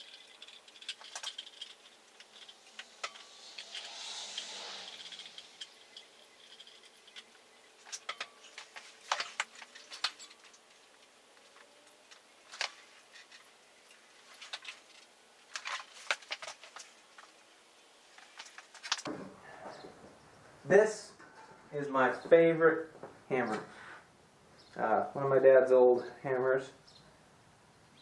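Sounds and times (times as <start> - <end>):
metal hardware clicking and rattling: 0.0 - 3.9, 4.8 - 17.4
short hiss: 2.3 - 6.7.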